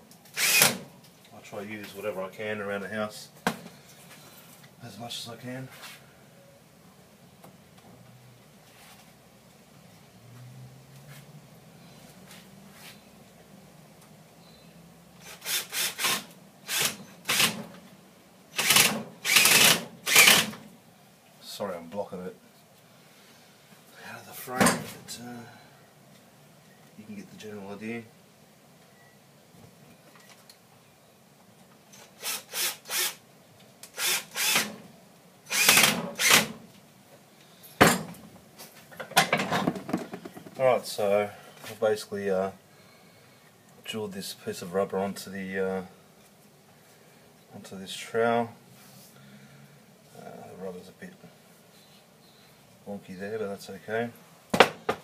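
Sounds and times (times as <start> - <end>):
power drill whirring: 0.4 - 0.8, 15.2 - 17.6, 18.6 - 20.5, 32.0 - 33.2, 33.9 - 34.7, 35.5 - 36.5.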